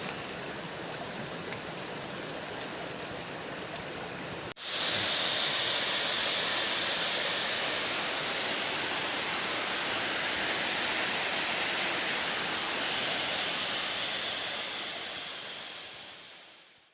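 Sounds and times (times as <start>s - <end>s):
waterfall roaring: 4.6s - 16.1s.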